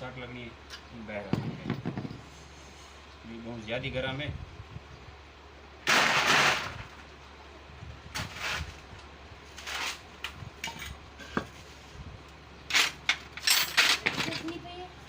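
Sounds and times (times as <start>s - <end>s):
metal tools clinking and scraping: 9.5s - 11.6s, 12.7s - 14.7s.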